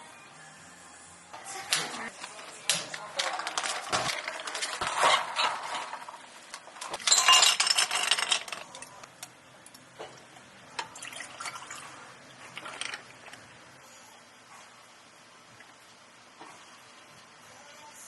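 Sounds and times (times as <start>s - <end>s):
glassware clinking with ice: 7.0s - 8.9s.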